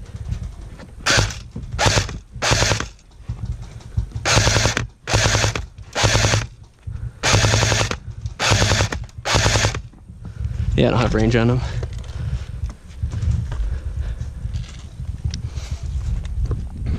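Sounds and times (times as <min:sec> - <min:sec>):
airsoft rifle firing bursts: 0:01.0 - 0:03.0, 0:04.2 - 0:06.6, 0:07.2 - 0:09.9.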